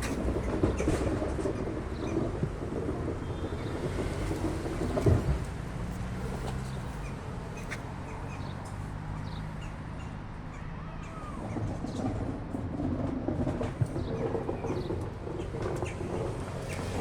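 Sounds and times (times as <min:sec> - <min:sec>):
small birds chirping: 0:06.2 - 0:11.7.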